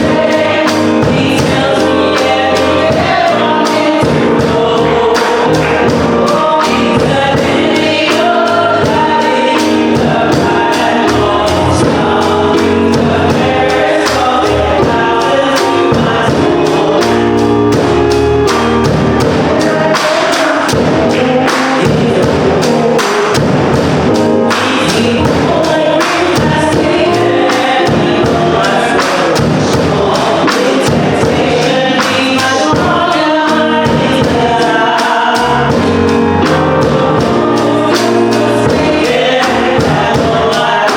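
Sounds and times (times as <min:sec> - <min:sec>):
band with steady beat: 0:00.0 - 0:40.9
choir singing: 0:00.0 - 0:40.9.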